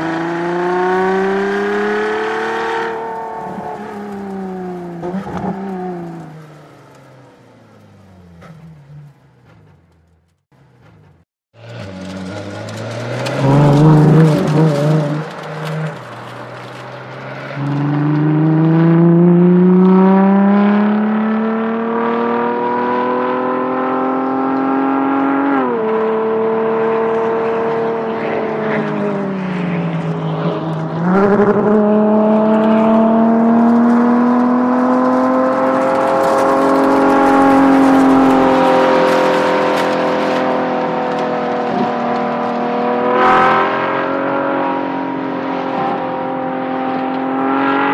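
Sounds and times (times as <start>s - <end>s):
sports car engine revving: 11.0s - 47.9s.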